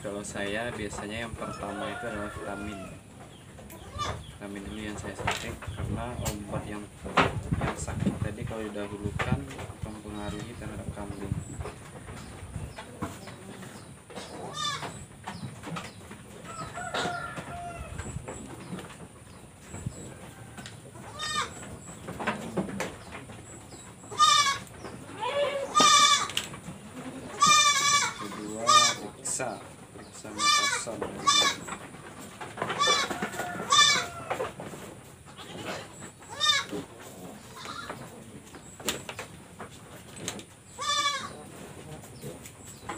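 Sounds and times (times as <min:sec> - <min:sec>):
farm animal calls: 0:00.0 - 0:07.2, 0:08.3 - 0:42.9
knocks and shuffling: 0:00.0 - 0:42.9
goat bleating: 0:03.7 - 0:04.3, 0:14.3 - 0:15.0, 0:21.0 - 0:21.6, 0:24.1 - 0:29.1, 0:30.3 - 0:31.7, 0:32.7 - 0:34.3, 0:35.3 - 0:38.0, 0:40.7 - 0:41.5.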